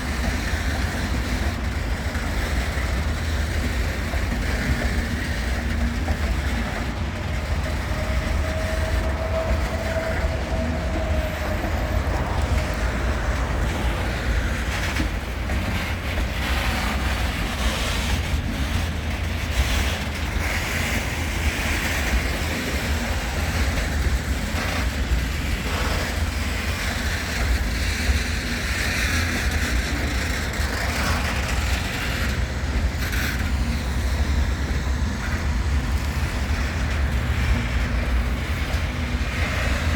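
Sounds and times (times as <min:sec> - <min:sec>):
train low rumble: 0:00.0 - 0:39.9.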